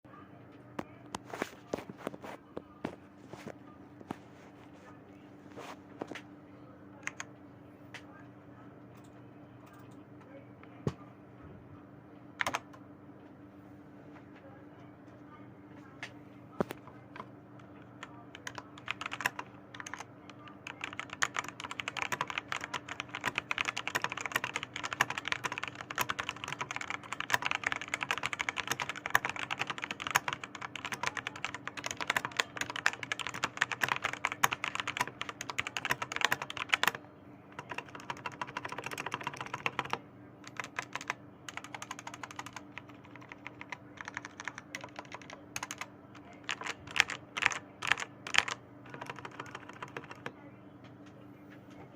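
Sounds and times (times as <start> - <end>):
mechanical keyboard typing: 7.0 - 7.3, 12.4 - 12.7, 18.0 - 37.0, 37.6 - 50.3.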